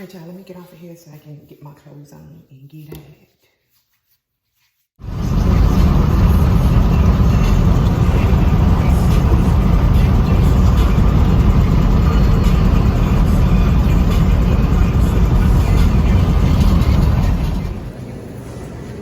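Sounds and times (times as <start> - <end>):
car rumbling on the road: 5.0 - 18.0.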